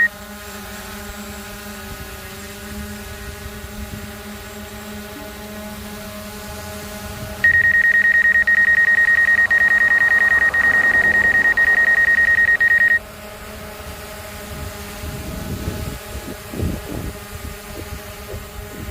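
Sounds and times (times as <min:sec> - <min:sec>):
drone propellers humming: 0:00.0 - 0:18.9
high-pitched electronic beep: 0:07.5 - 0:13.0.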